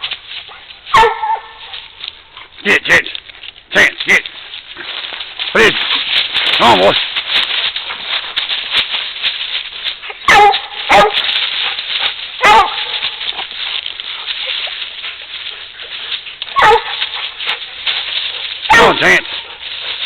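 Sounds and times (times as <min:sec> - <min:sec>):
dog barking: 0:00.9 - 0:01.8, 0:10.3 - 0:11.3, 0:12.4 - 0:13.1, 0:16.5 - 0:17.2, 0:18.7 - 0:19.6.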